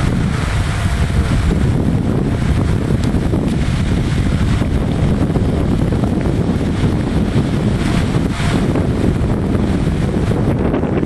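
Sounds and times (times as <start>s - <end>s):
wind rumble on microphone: 0.0s - 11.0s.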